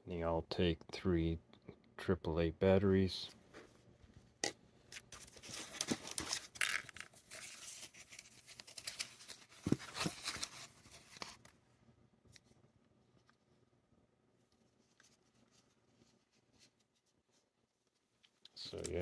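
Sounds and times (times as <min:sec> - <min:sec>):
packaging rustling and crinkling: 0:05.0 - 0:11.6.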